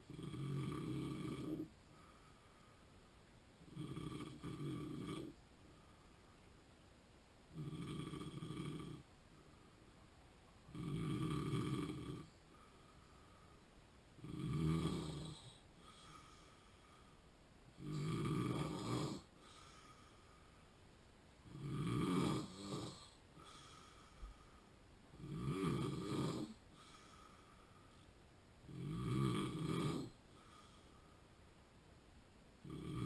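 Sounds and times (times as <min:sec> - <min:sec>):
man snoring: 0:00.1 - 0:01.7, 0:03.7 - 0:05.4, 0:07.5 - 0:09.0, 0:10.7 - 0:12.3, 0:14.2 - 0:16.5, 0:17.8 - 0:20.0, 0:21.5 - 0:24.1, 0:25.2 - 0:27.2, 0:28.7 - 0:30.8, 0:32.6 - 0:33.0.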